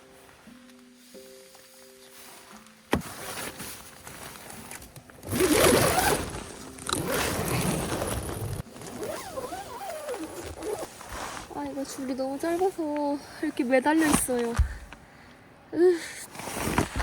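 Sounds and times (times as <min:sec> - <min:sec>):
nylon fabric rustling: 0:00.0 - 0:14.9
faint background music: 0:00.0 - 0:16.2
tent zipper rasping: 0:02.2 - 0:12.7, 0:16.3 - 0:17.0.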